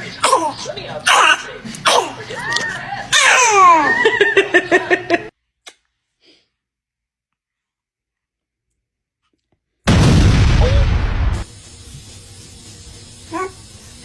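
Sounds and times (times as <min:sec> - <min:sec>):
burst of rushing noise: 0:09.9 - 0:11.6.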